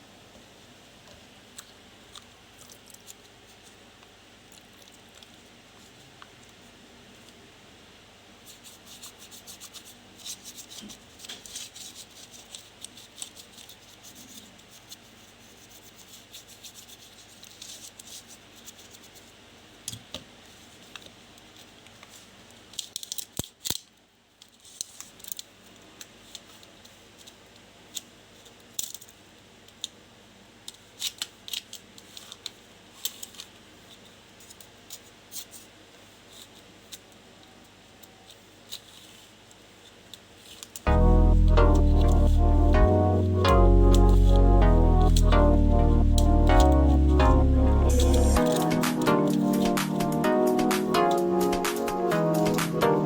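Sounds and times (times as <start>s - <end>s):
scratching and rubbing on plastic: 8.4s - 19.4s.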